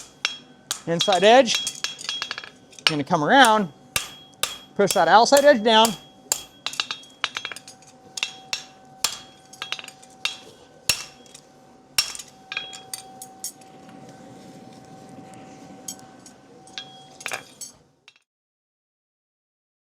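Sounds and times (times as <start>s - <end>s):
hammer striking horseshoe on anvil: 0.0s - 13.6s, 16.7s - 18.2s.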